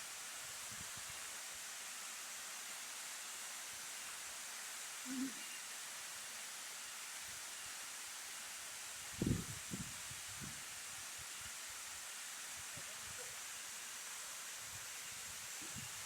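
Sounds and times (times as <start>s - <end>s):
waterfall rushing hiss: 0.0s - 16.0s
low hoot-like sound: 5.1s - 5.5s.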